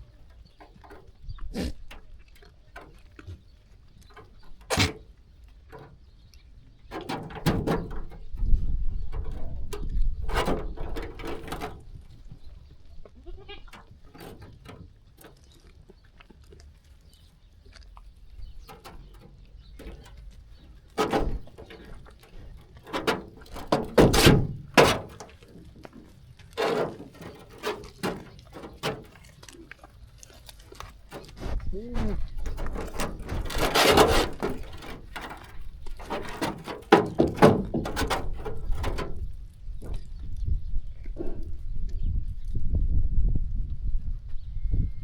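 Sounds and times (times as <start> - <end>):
sheep bleating: 13.2 - 13.8.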